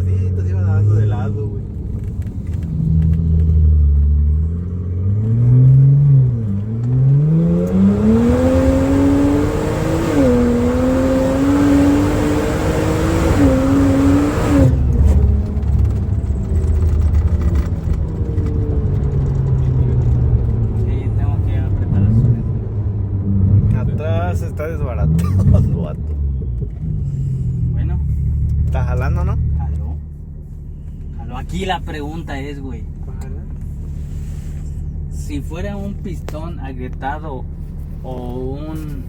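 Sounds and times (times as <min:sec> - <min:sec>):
car engine accelerating hard: 0:00.0 - 0:30.0.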